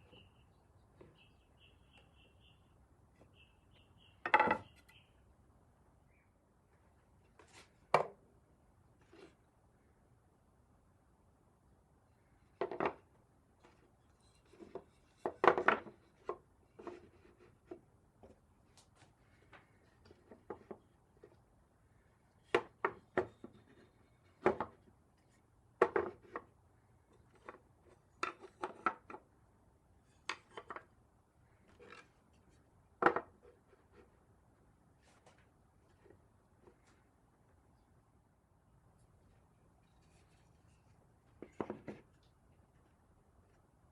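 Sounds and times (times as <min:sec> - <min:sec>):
wooden pieces knocking: 0:04.2 - 0:04.8, 0:12.6 - 0:13.8, 0:14.4 - 0:18.4, 0:20.0 - 0:21.4, 0:22.4 - 0:24.9, 0:25.8 - 0:26.5, 0:27.1 - 0:29.2, 0:30.2 - 0:30.9, 0:33.0 - 0:33.7.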